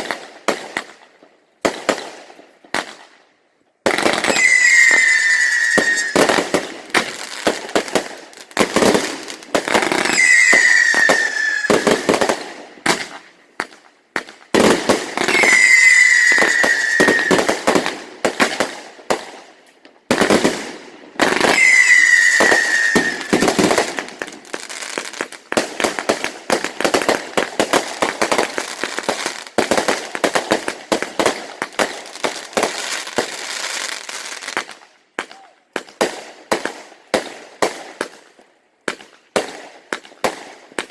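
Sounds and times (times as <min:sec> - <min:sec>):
firework bangs and crackles: 0:00.0 - 0:40.9
firework whistles: 0:04.1 - 0:06.5, 0:09.7 - 0:12.3, 0:15.2 - 0:17.6, 0:21.3 - 0:23.8.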